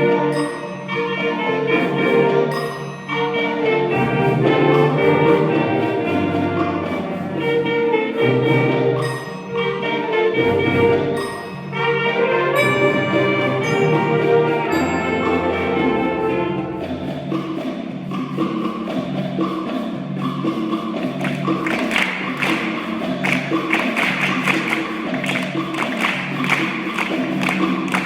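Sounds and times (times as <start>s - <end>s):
percussion hits: 0.0s - 11.9s, 12.5s - 28.0s.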